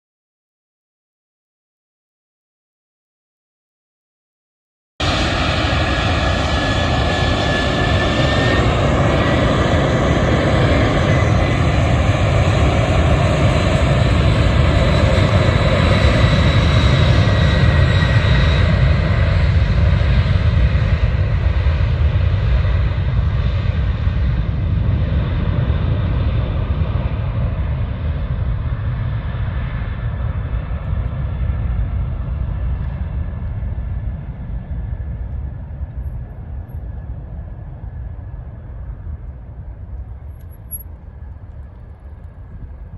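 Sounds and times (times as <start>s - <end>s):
jet engines deep rumble: 5.0s - 42.9s.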